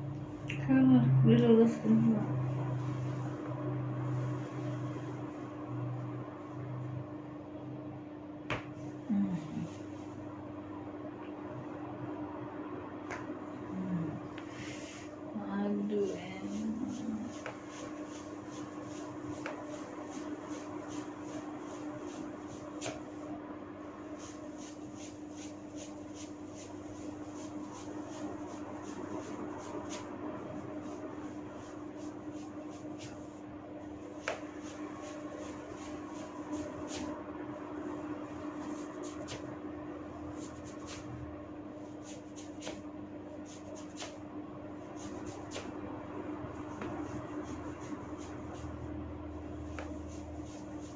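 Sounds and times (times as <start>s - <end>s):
low hum: 0.0s - 50.9s
hands swishing through hair: 16.0s - 23.2s, 24.1s - 41.2s, 41.8s - 45.8s, 46.6s - 50.9s.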